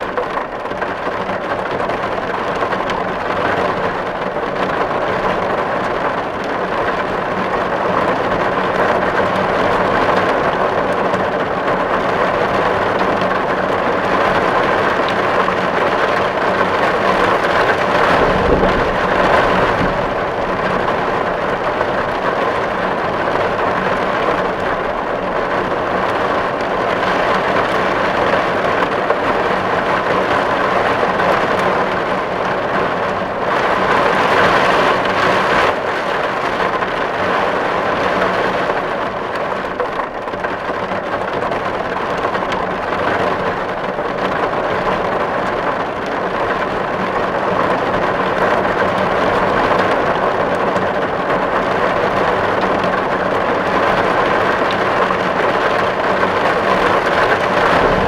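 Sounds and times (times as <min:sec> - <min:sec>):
rain on a tin roof: 0:00.0 - 0:58.0
low rumble: 0:17.8 - 0:22.8, 0:57.4 - 0:58.0.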